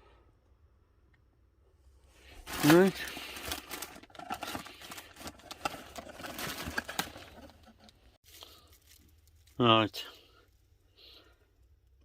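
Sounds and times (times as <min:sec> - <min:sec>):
lens packaging being handled: 0:02.4 - 0:07.9.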